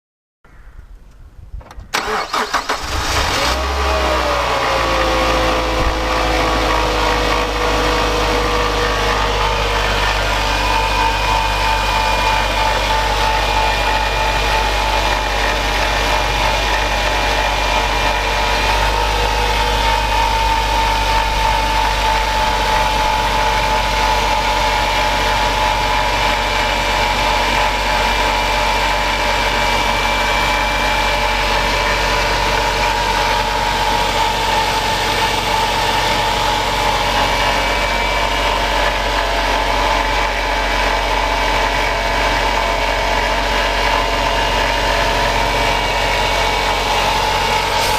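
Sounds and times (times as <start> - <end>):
car engine idling: 1.9 - 47.9.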